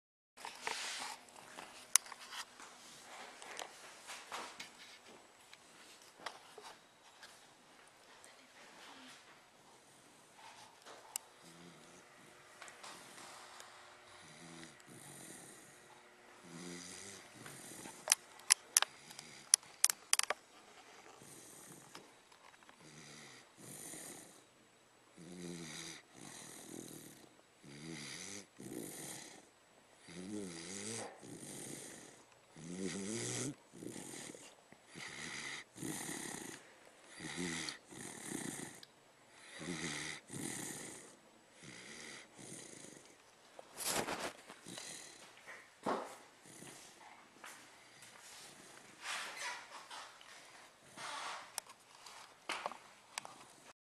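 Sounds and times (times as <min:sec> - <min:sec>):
dog snoring: 0:11.4 - 0:18.2, 0:18.8 - 0:19.9, 0:21.1 - 0:22.1, 0:22.8 - 0:24.5, 0:25.1 - 0:43.2, 0:43.8 - 0:45.5, 0:46.4 - 0:47.0.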